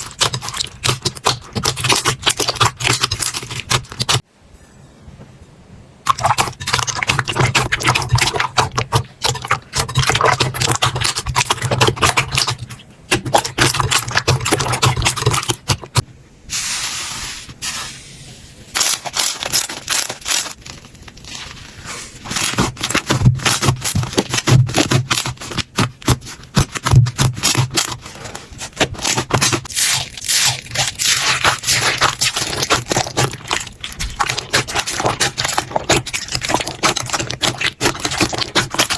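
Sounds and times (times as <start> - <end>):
slime squeezed by hand crackling: 18.7 - 38.9.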